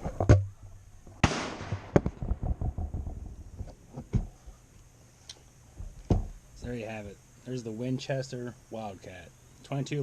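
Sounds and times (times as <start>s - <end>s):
rifle shots with echo: 1.2s - 2.7s.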